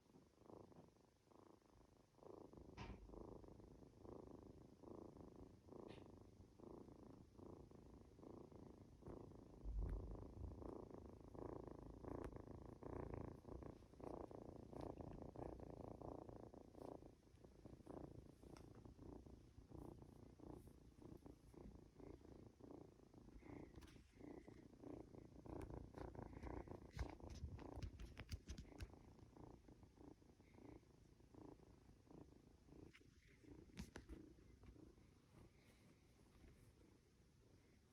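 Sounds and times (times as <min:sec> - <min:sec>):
kitten purring: 0:00.0 - 0:37.9.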